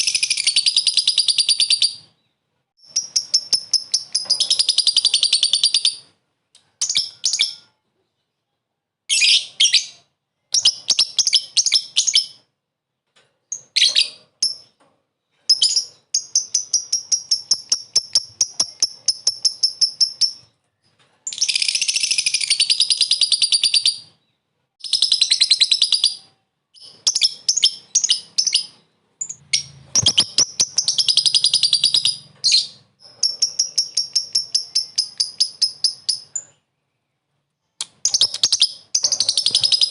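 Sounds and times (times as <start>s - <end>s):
lovebird chattering trills: 26.8s - 36.5s.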